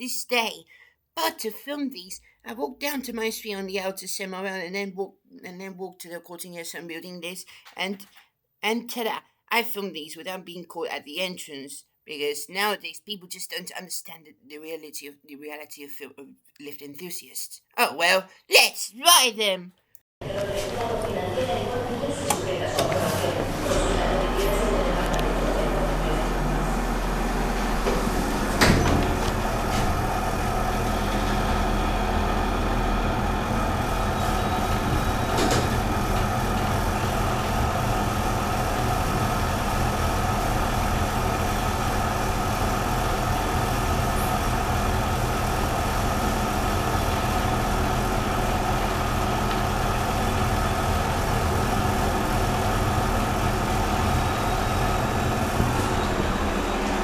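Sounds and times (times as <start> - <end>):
lift humming: 20.2 - 57.0.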